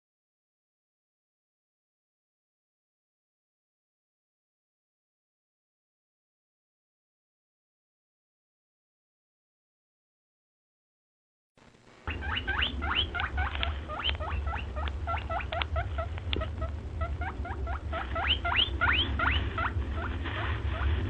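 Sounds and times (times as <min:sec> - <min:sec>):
low hum: 0:11.6 - 0:21.0
small animal squeaking: 0:12.1 - 0:21.0.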